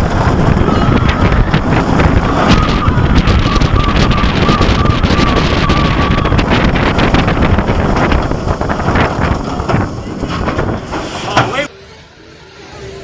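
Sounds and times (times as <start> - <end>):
wind buffeting microphone: 0.0 - 11.4
roller coaster rumble and clatter: 0.0 - 13.0
steady high tone: 0.6 - 7.1, 11.7 - 13.0.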